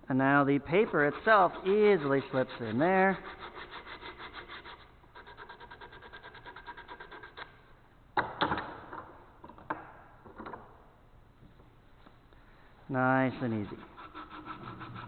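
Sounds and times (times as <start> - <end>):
sandpaper rubbing on wood: 0.7 - 7.5, 13.3 - 15.0
sharp knocks and clatters: 8.2 - 10.7.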